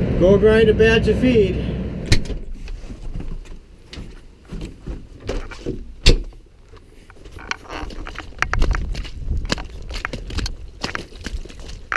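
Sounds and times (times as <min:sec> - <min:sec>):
low rumble: 0:00.0 - 0:02.6
knocks and clunks: 0:02.0 - 0:11.1.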